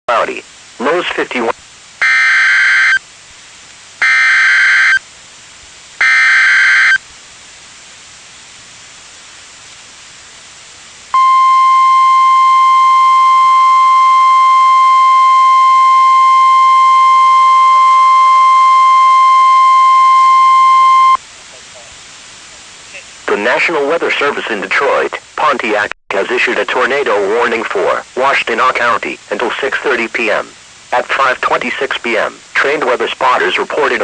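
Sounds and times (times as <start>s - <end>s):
faint radio hiss: 0.1s - 34.0s
screeching digital data bursts: 2.0s - 3.0s, 4.0s - 5.0s, 6.0s - 7.0s
steady warning alarm tone: 2.0s - 3.0s, 4.0s - 5.0s, 6.0s - 7.0s, 11.2s - 21.2s.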